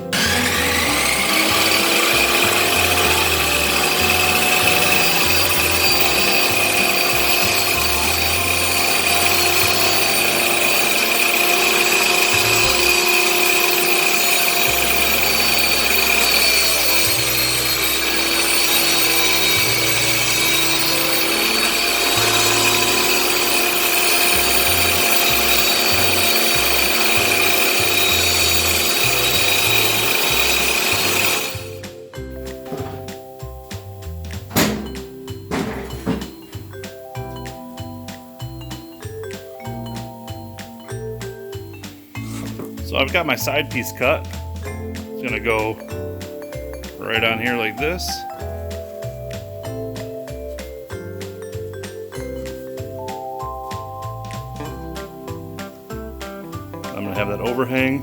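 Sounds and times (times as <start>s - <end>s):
power tool whining: 0.0s - 48.0s
background music with bass line: 31.6s - 58.0s.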